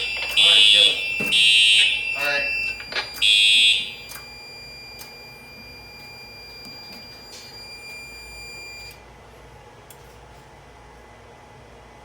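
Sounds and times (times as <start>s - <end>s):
fire alarm horn tone: 0.0s - 9.0s
faint high whine: 3.9s - 9.0s.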